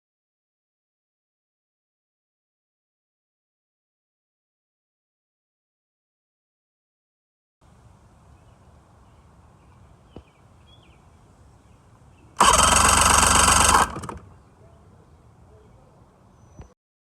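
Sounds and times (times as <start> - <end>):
engine starting and running: 12.4 - 14.4
faint bird chirps: 14.3 - 16.8.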